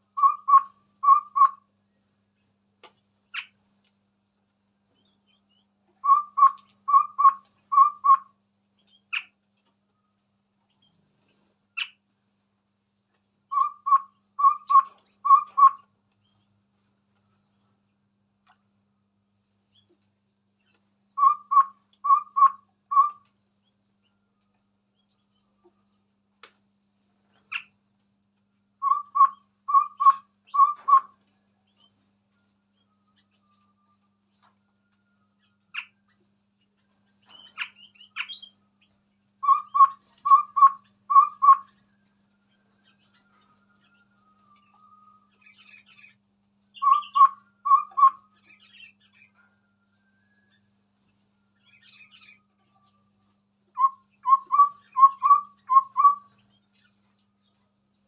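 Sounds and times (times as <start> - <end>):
babbler singing double notes: 39.4 - 41.7, 46.8 - 48.2, 53.8 - 56.3.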